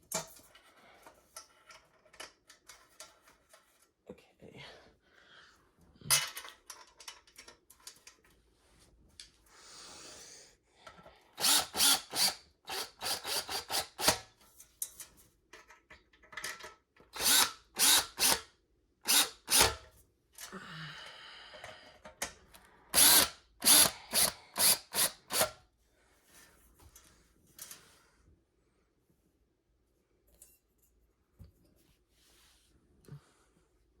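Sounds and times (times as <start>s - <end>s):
power drill driving screws: 11.4s - 14.3s, 17.2s - 18.5s, 19.1s - 19.8s, 22.9s - 25.6s.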